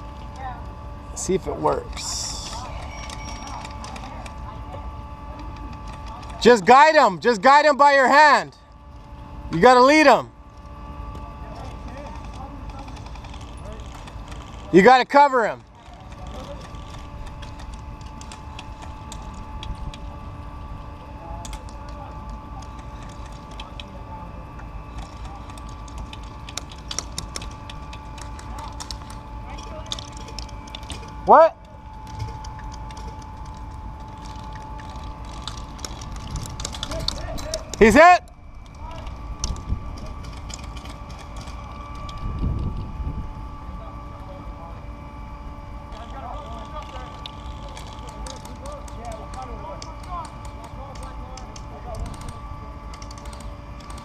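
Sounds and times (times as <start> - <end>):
steady hum: 0.0 - 54.0
sharp clicks: 21.4 - 23.9, 24.6 - 31.2, 32.0 - 42.5, 45.9 - 54.0.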